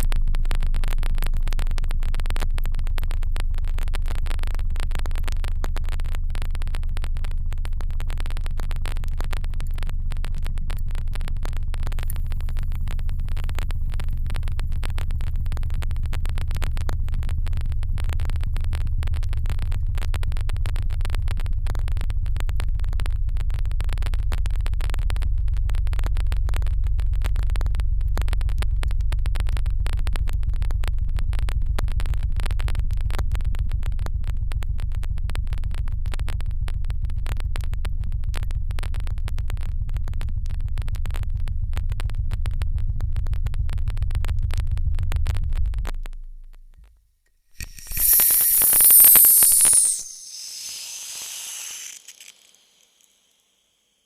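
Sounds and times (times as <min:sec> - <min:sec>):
pump running with rattling pulse: 0:47.6 - 0:53.4.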